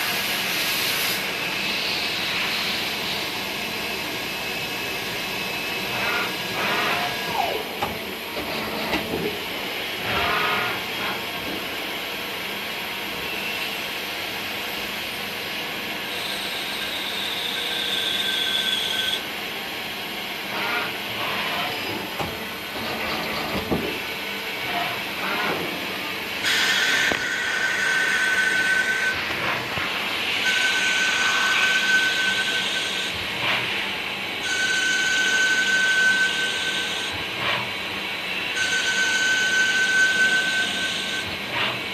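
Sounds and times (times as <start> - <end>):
machine running: 20.5 - 33.8.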